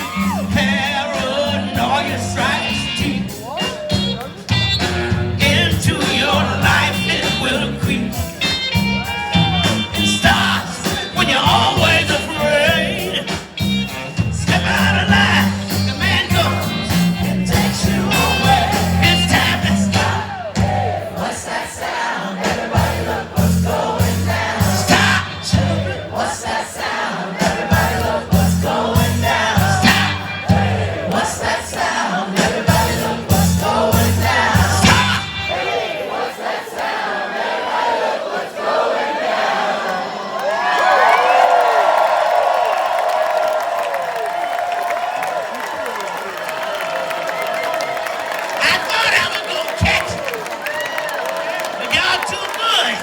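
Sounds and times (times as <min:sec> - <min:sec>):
person singing lead vocals: 0:00.0 - 0:04.1, 0:05.0 - 0:08.7, 0:09.4 - 0:36.3
live band playing soul-rock: 0:00.0 - 0:21.3, 0:22.4 - 0:26.6, 0:27.4 - 0:35.8
steady bass line: 0:00.1 - 0:21.2, 0:22.7 - 0:26.2, 0:27.6 - 0:31.6, 0:32.5 - 0:35.6.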